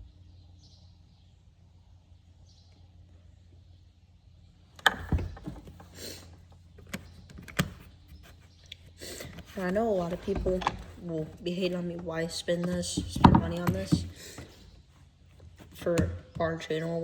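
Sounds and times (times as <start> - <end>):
low steady hum: 0.0 - 17.0
knocks and rattles: 4.8 - 5.9, 9.3 - 14.7.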